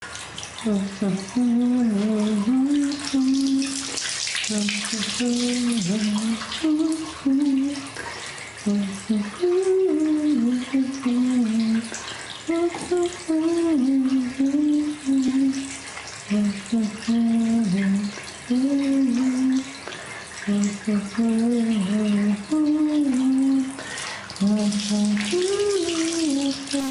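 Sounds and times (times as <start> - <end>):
water running from a tap: 0.0 - 26.9
person humming a slow tune: 0.7 - 3.8, 4.5 - 7.9, 8.6 - 11.9, 12.5 - 15.7, 16.3 - 19.8, 24.4 - 26.9.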